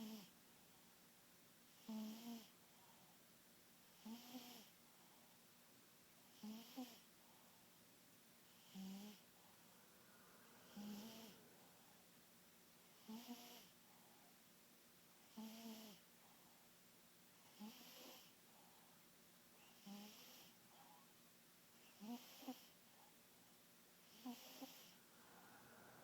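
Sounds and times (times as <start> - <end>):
cat snoring: 0.0 - 0.3, 1.7 - 2.5, 3.9 - 4.8, 6.3 - 7.1, 8.5 - 9.3, 10.2 - 11.9, 13.0 - 13.8, 15.3 - 16.0, 17.5 - 18.4, 19.7 - 20.9, 21.8 - 22.8, 24.0 - 26.0.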